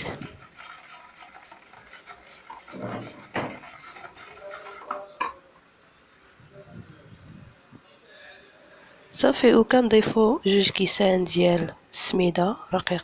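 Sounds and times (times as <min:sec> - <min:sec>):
utensil scraping a mixing bowl: 0:00.0 - 0:05.4.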